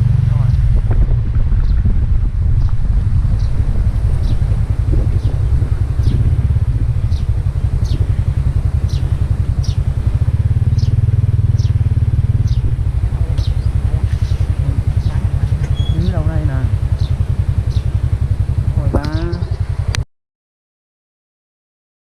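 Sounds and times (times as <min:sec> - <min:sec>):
small engine rumbling: 0:00.0 - 0:20.0
high falling chirp: 0:03.3 - 0:18.2.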